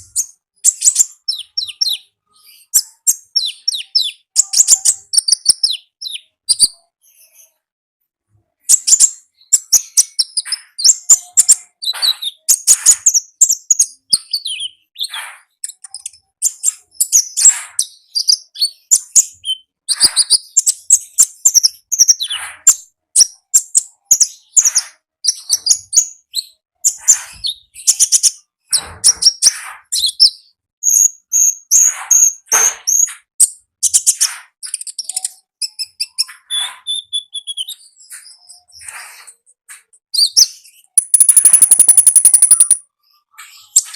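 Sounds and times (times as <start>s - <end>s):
songbird singing: 40.8s - 42.8s.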